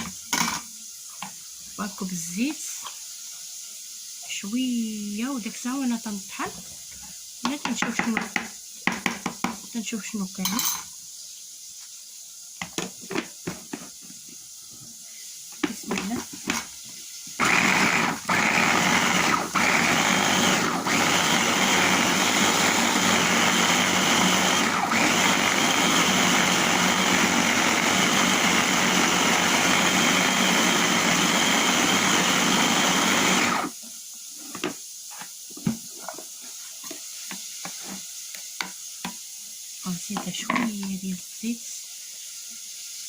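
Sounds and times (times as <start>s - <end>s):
electric grinder running: 17.4s - 33.7s.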